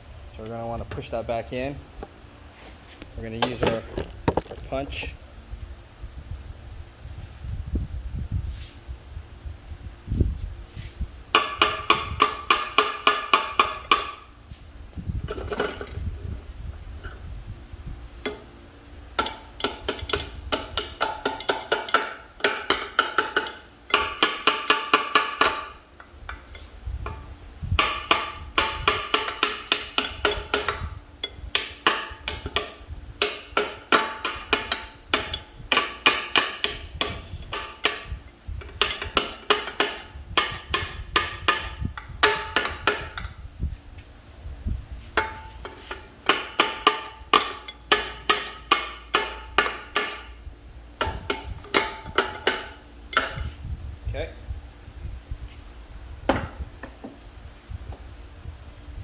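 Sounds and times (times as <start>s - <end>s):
hammer striking steel punch: 19.2s - 25.8s, 27.8s - 30.9s, 31.5s - 43.3s, 45.2s - 50.4s, 51.0s - 53.6s.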